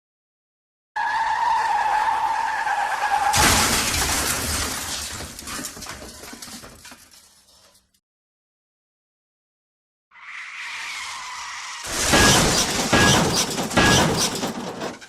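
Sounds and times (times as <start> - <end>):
car tyre screech: 1.0 - 3.4, 10.1 - 14.4
crash impact: 3.3 - 6.1, 11.9 - 15.0
debris clattering: 3.3 - 8.0, 11.9 - 15.0.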